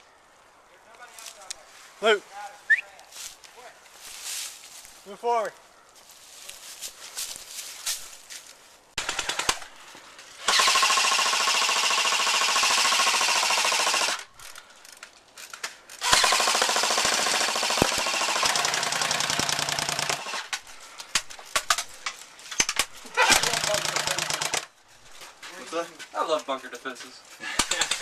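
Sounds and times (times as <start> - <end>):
airsoft guns firing bursts: 9.0 - 9.7, 10.4 - 14.3, 16.0 - 20.5, 23.3 - 24.7, 27.4 - 28.0.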